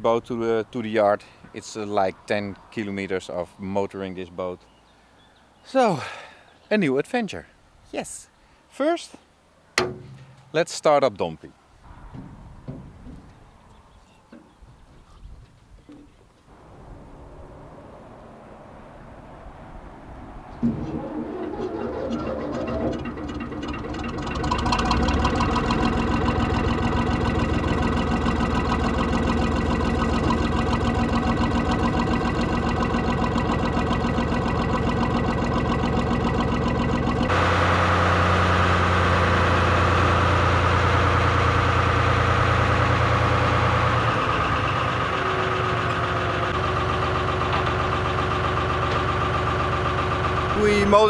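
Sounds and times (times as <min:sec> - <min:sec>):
boat diesel engine idling: 0:21.8 - 0:51.0.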